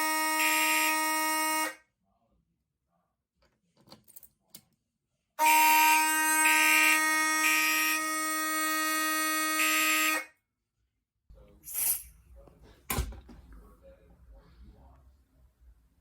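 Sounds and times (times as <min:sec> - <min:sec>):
mechanical horn pulsing blasts: 0:00.0 - 0:01.8, 0:05.4 - 0:10.3
fire alarm horn steady tone: 0:00.0 - 0:01.9, 0:05.4 - 0:10.4.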